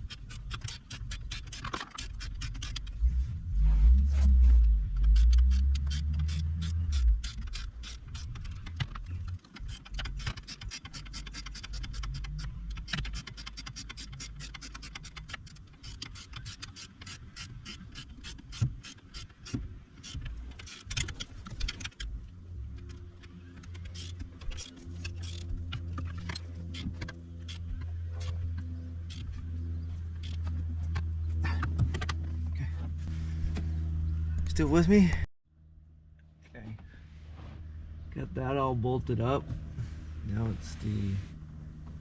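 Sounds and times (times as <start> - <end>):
ratchet wrench clicking: 0.0 - 3.0, 5.0 - 22.1, 23.7 - 27.7
low steady hum: 0.0 - 16.1, 19.6 - 42.0.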